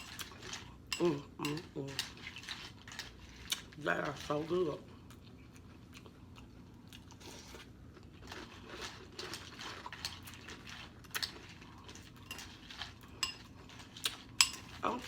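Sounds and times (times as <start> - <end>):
person chewing: 0.0 - 3.8, 4.9 - 14.8.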